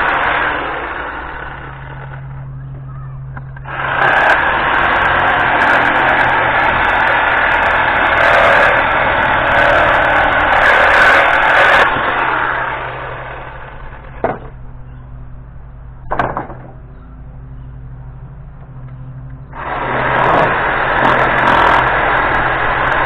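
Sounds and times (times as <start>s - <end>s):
power tool running: 0.0s - 14.8s, 19.2s - 23.0s
low steady hum: 0.0s - 23.0s
sharp knocks: 14.1s - 14.6s, 16.0s - 16.8s.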